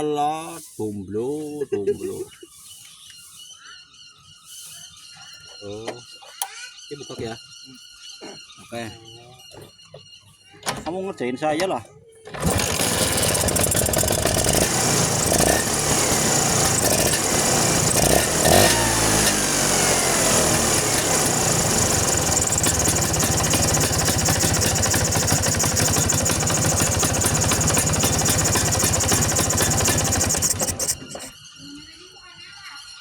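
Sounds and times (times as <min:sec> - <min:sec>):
scooter engine idling and revving: 0:12.3 - 0:31.4.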